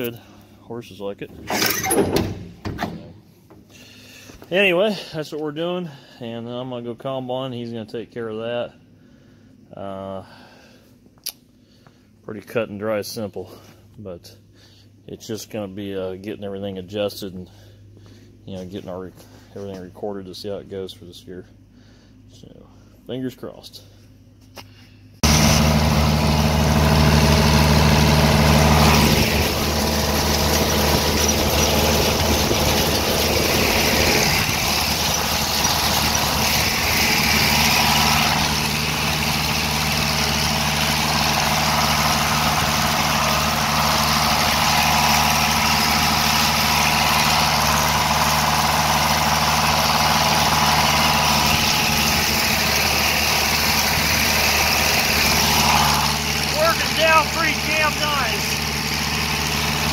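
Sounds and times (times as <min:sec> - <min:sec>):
farm machine engine running: 0:25.2 - 0:59.9.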